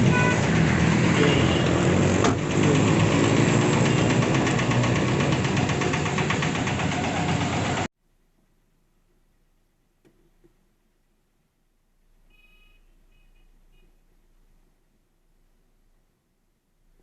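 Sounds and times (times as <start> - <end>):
engine idling: 0.0 - 7.9.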